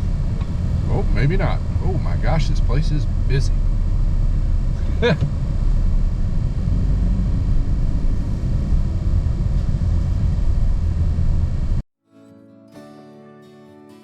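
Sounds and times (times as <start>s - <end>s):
truck engine and road rumble: 0.0s - 11.8s
plucked-string music: 12.0s - 14.0s.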